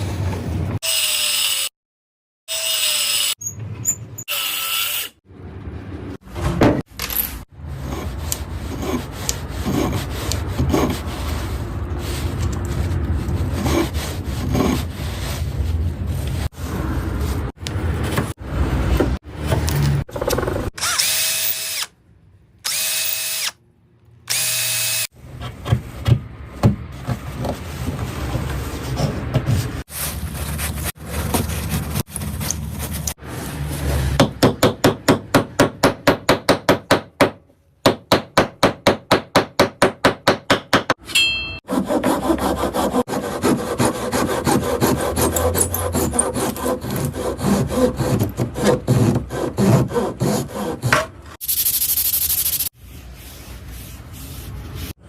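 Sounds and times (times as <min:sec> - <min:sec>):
sawing and rubbing on wood: 0:07.8 - 0:12.4, 0:13.2 - 0:17.5, 0:41.7 - 0:51.1.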